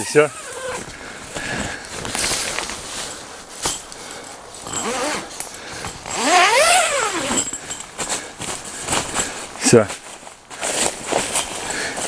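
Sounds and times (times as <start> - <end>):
tent zipper rasping: 0.0 - 9.6.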